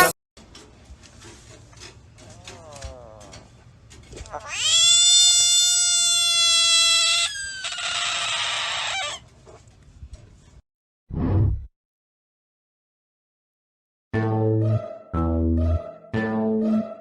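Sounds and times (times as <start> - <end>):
cat yowling: 4.2 - 9.2.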